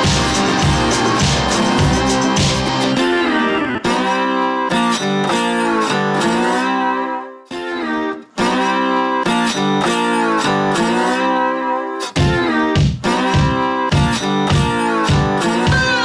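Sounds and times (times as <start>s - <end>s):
guitar background music: 0.0s - 16.0s.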